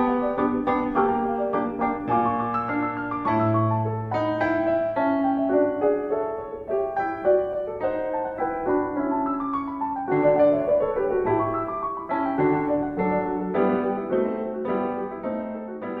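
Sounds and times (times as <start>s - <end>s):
gentle piano melody: 0.0s - 16.0s.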